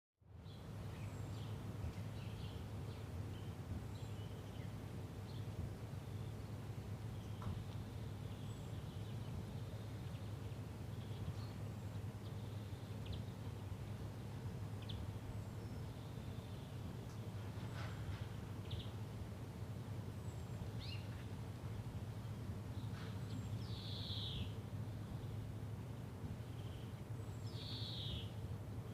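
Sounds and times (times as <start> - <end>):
low background rumble: 0.3 - 28.9
birds chirping: 0.4 - 25.7, 26.3 - 28.9
bird chirps: 7.1 - 13.4, 20.2 - 21.3, 22.7 - 24.6, 26.4 - 28.4.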